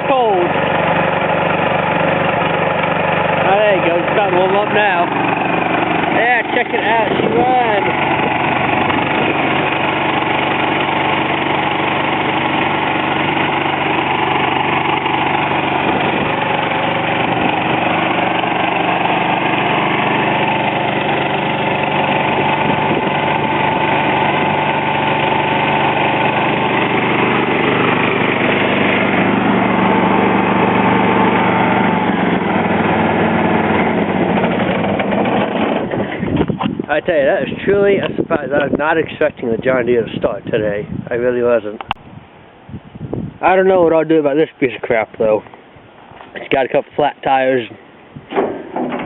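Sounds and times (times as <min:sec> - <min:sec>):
lawn tractor engine running: 0:00.0 - 0:42.7, 0:43.3 - 0:49.0.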